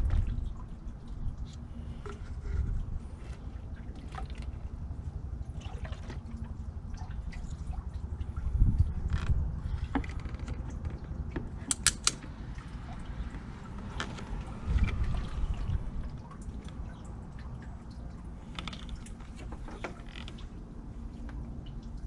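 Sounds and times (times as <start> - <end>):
hose clamp clicks and knocks: 11.6 - 12.2.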